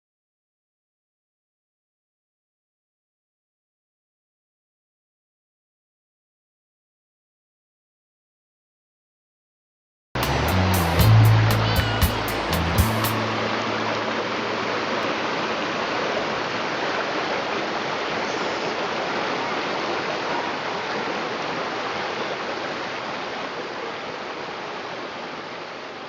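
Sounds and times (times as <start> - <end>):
stream water rushing: 10.2 - 26.0.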